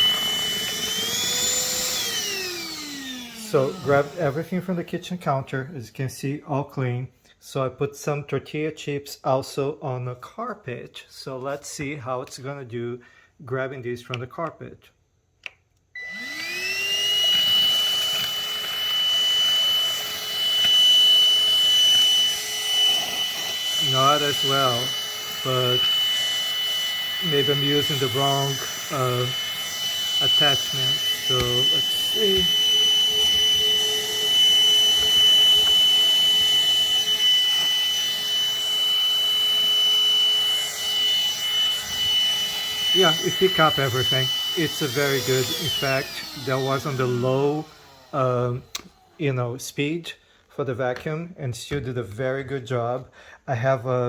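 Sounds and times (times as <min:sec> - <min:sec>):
handheld vacuum whining: 0:00.0 - 0:05.7, 0:16.0 - 0:49.8.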